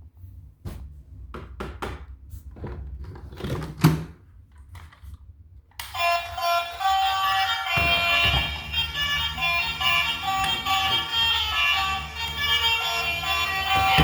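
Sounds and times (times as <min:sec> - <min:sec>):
music with synthesized singing: 0:06.0 - 0:14.0.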